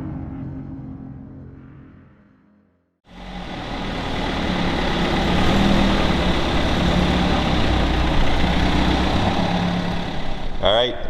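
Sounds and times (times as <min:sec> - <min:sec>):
car engine running steadily: 0:03.1 - 0:11.0.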